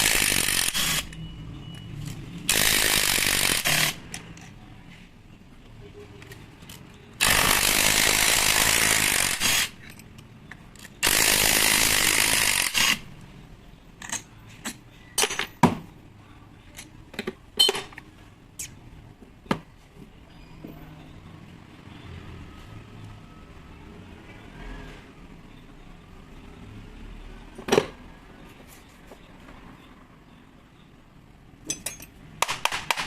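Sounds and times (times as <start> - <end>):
power tool running: 0.0 - 1.2, 2.5 - 4.0, 7.2 - 9.8, 11.0 - 13.0.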